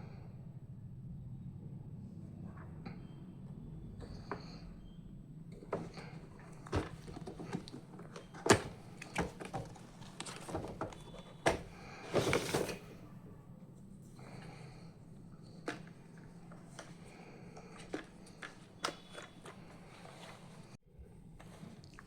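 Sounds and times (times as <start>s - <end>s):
packaging rustling: 6.6s - 13.0s.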